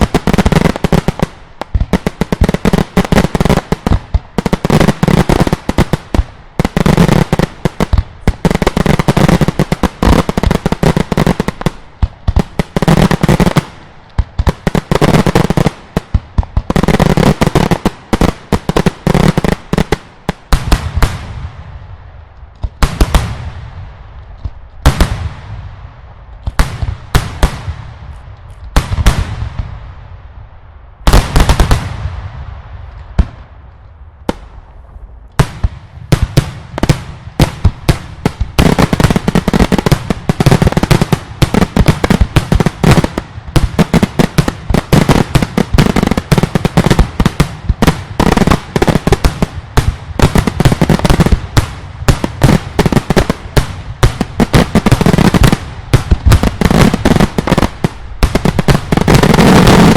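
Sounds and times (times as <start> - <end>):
fireworks bangs and crackle: 0.0 - 59.9
echoing firework booms: 20.5 - 22.0, 24.8 - 28.2, 28.8 - 30.1, 31.0 - 59.9.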